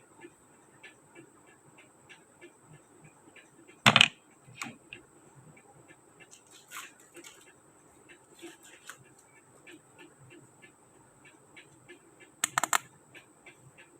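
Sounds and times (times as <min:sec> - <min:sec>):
plastic toy pieces clicking: 0:03.9 - 0:04.8, 0:12.4 - 0:12.9
sharp plastic clack: 0:03.9 - 0:04.8, 0:12.4 - 0:12.9.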